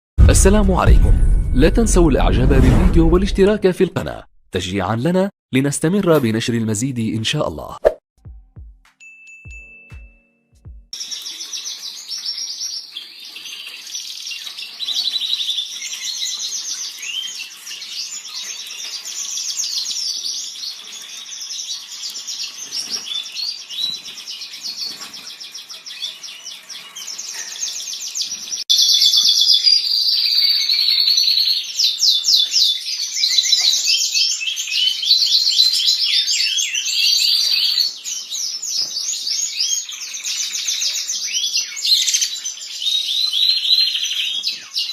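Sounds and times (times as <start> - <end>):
cage birds chirping: 11.0 - 44.9.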